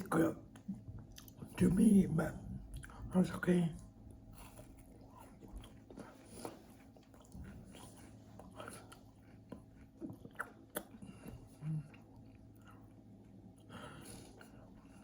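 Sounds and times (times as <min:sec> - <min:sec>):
person chewing: 0:00.5 - 0:01.6, 0:02.6 - 0:03.1, 0:04.2 - 0:15.0.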